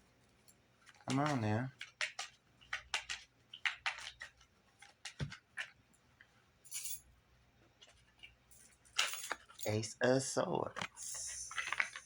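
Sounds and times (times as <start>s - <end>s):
cards clicking and flicking: 1.0s - 5.7s.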